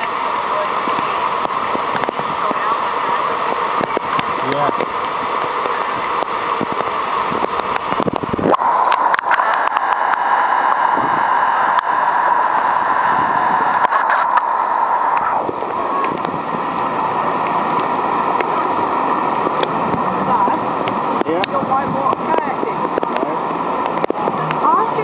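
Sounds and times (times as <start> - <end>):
floodwater rushing: 0.0 - 25.0
sharp ticks and splashes: 19.4 - 25.0.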